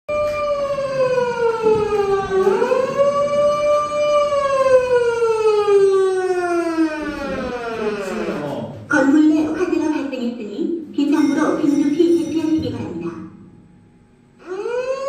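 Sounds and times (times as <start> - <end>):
siren wailing: 0.1 - 8.8, 14.4 - 15.0.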